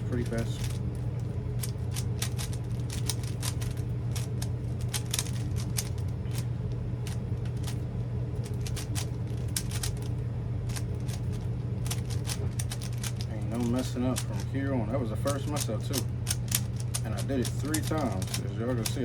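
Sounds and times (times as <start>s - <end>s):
steady low hum: 0.0s - 19.0s
puzzle cube clicking as turned: 1.6s - 6.4s, 8.4s - 10.1s, 10.7s - 13.2s, 15.3s - 18.4s.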